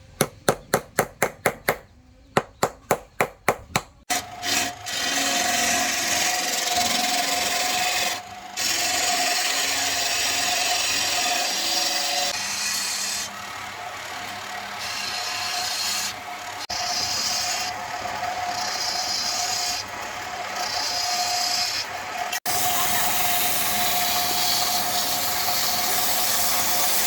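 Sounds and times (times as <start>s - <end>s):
sharp taps: 0.2s - 4.0s.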